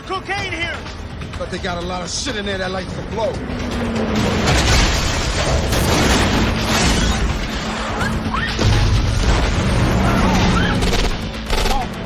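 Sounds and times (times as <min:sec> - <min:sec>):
action film score music: 0:00.0 - 0:12.0
crashes and explosions: 0:03.6 - 0:12.0.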